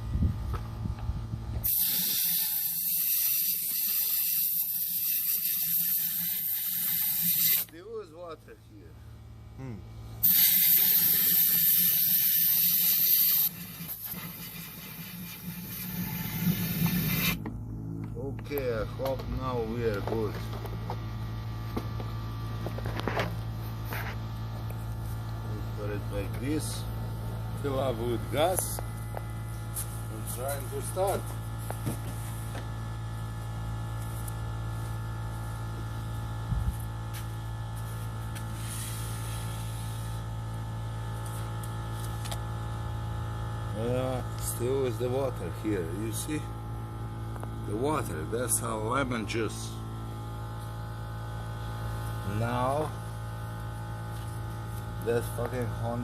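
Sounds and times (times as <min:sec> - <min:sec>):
low electrical hum: 0:00.0 - 0:56.0
compressed air hissing from blow gun: 0:01.6 - 0:07.7, 0:10.2 - 0:17.4, 0:38.4 - 0:40.2.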